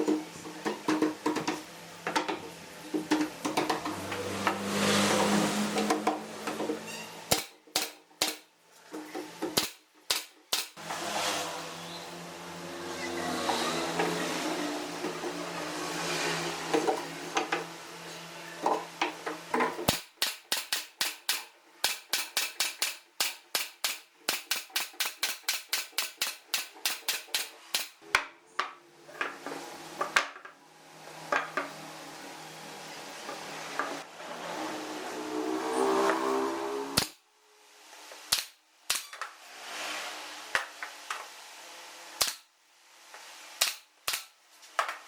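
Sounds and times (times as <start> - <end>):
hammer strikes on wood: 7.3 - 8.5.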